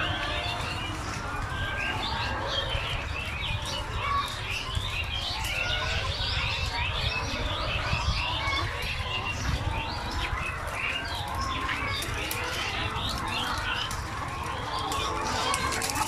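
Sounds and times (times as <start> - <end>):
chickens chirping and squawking: 0.0 - 16.0.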